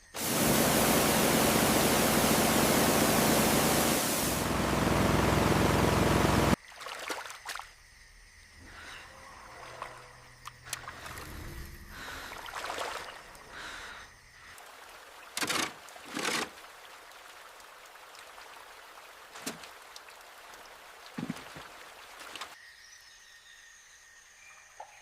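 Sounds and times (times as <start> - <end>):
short loud noisy bursts: 0.1 - 6.6
water trickling and sloshing: 6.5 - 7.8, 8.6 - 22.6.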